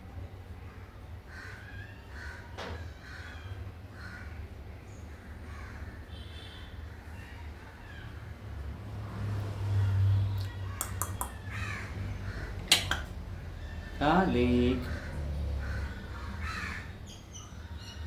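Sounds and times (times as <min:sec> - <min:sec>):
sharp click: 0:10.8 - 0:11.4, 0:12.7 - 0:13.1.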